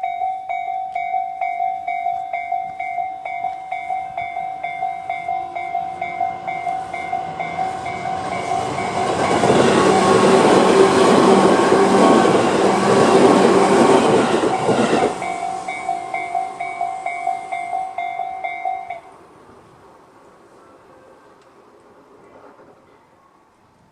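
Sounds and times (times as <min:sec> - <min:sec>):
level crossing alarm tones: 0:00.0 - 0:19.1
electric train passing: 0:00.0 - 0:23.9.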